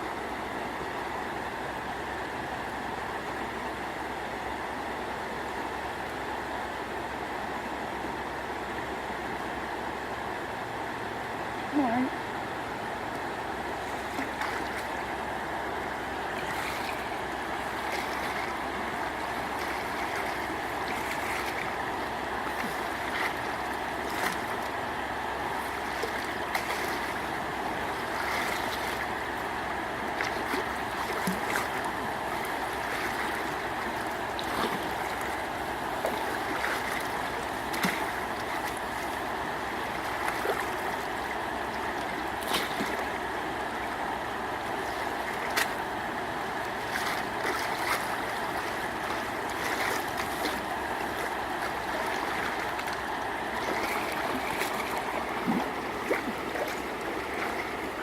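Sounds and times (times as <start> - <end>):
flowing water rushing: 0.0 - 58.0
short splashes and knocks: 13.8 - 15.0, 16.4 - 21.8, 22.4 - 24.8, 25.5 - 29.3, 30.1 - 43.2, 44.7 - 45.8, 46.7 - 58.0.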